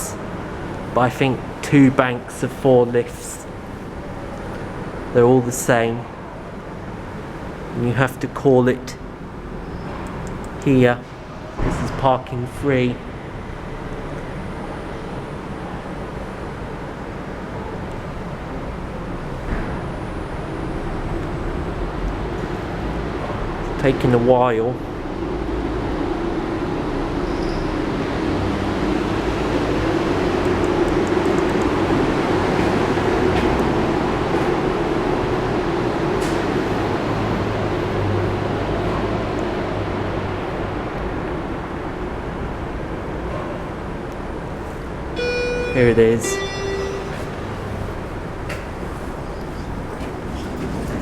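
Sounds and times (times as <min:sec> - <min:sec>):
car park background rumble and hiss: 0:00.0 - 0:51.0
faint high whine: 0:45.2 - 0:48.1
low drone: 0:45.2 - 0:48.4.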